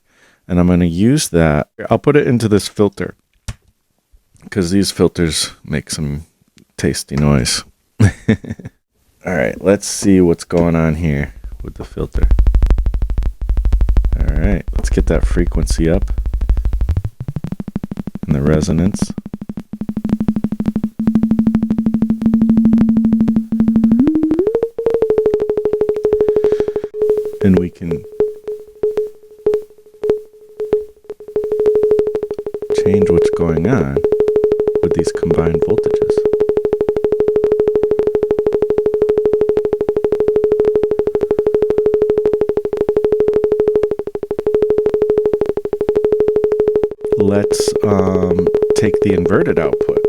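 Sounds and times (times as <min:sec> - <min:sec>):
pulsing synth tone: 0:11.4 - 0:27.2.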